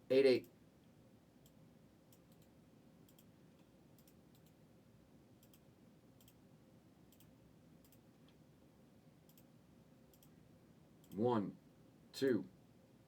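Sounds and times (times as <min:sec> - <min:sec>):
faint sharp clicks in pairs: 0:01.4 - 0:04.6, 0:05.4 - 0:06.4, 0:07.1 - 0:08.4, 0:09.2 - 0:09.5, 0:10.1 - 0:10.4, 0:11.0 - 0:11.3.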